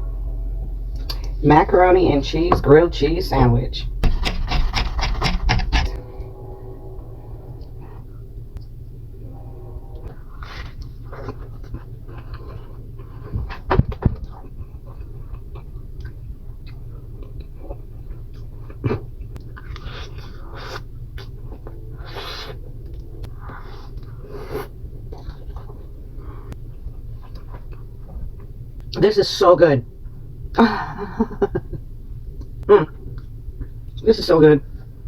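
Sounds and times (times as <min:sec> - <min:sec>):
steady low hum: 0:00.0 - 0:35.0
loud knocks: 0:03.8 - 0:07.8
person chewing: 0:10.4 - 0:13.4, 0:14.2 - 0:26.6.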